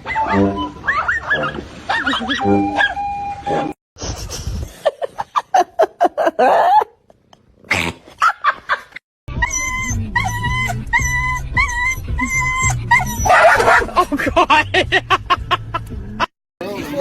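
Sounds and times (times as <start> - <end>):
dog yipping and whimpering: 0.0 - 3.1, 9.3 - 13.9.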